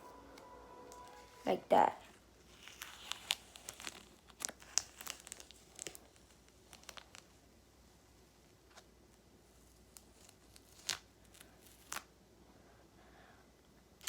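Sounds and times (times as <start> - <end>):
adhesive tape peeling and crumpling: 2.5 - 7.2, 9.9 - 12.1.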